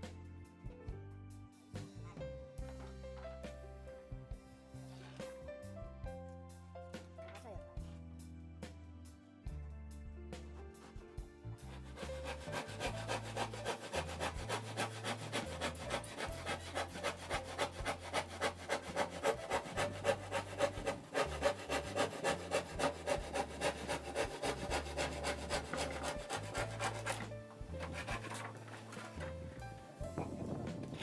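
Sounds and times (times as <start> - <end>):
background music: 0.0 - 31.0
hand saw cutting wood: 11.6 - 29.4.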